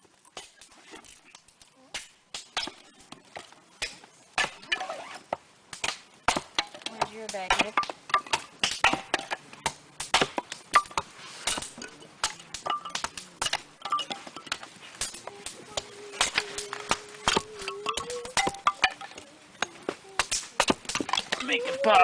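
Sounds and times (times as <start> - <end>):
axe splitting kindling: 3.8 - 15.6.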